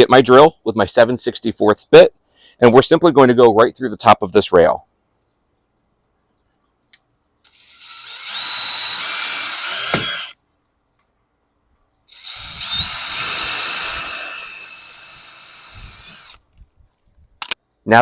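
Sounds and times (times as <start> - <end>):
electric drill drilling: 7.5 - 10.4, 12.1 - 16.4.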